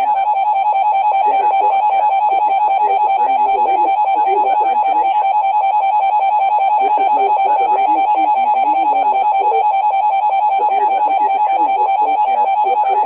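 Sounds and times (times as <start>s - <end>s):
two-tone alarm signal: 0.0s - 13.0s.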